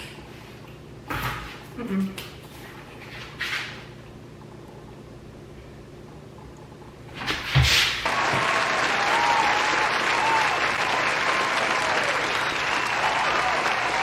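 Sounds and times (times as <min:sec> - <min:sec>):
crowd applause: 0:08.0 - 0:14.0.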